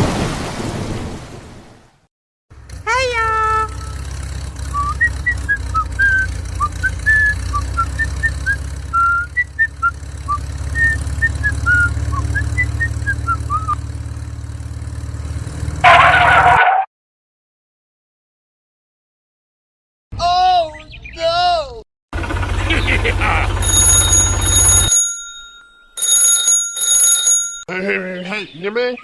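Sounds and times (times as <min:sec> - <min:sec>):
whistled notes: 0:04.7 - 0:13.8.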